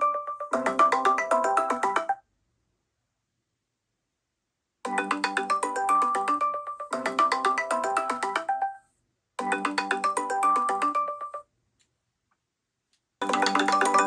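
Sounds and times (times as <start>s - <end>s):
phone ringtone melody: 0.0s - 2.2s, 4.9s - 11.4s, 13.2s - 14.0s.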